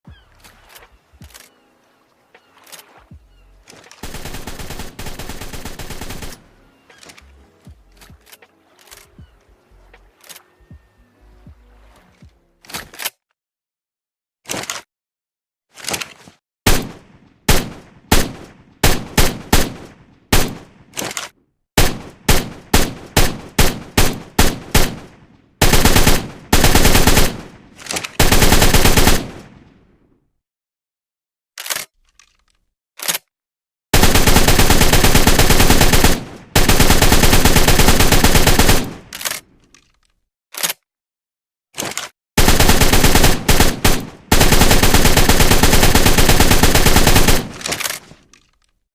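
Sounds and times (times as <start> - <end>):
automatic gunfire bursts: 4.0 - 6.5, 21.8 - 27.5, 28.2 - 29.4, 34.0 - 39.4, 42.4 - 48.0.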